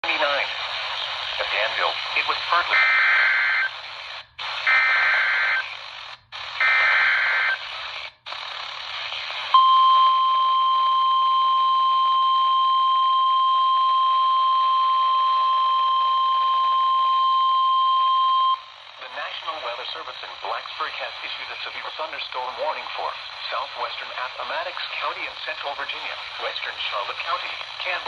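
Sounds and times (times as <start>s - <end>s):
radio static hiss: 0.0s - 9.6s, 18.6s - 28.0s
steady warning alarm tone: 2.5s - 8.7s, 9.5s - 20.1s
digital header tones: 2.7s - 3.7s, 4.7s - 5.7s, 6.6s - 7.6s, 9.6s - 18.8s.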